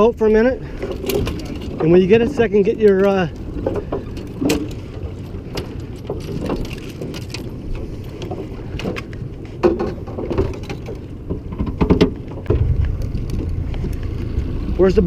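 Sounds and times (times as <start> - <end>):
boat motor idling: 0.0 - 15.0
knocks and clatters on boat: 0.0 - 15.0.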